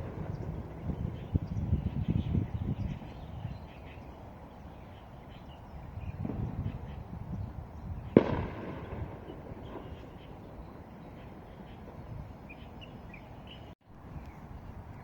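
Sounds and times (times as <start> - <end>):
low outdoor rumbling: 0.0 - 4.9
sharp loud bang: 8.1 - 10.2.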